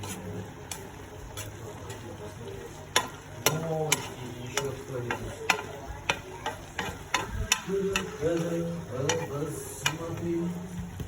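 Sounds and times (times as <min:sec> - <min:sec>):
food sizzling: 0:00.0 - 0:10.8
utensil scraping pot: 0:03.0 - 0:10.3.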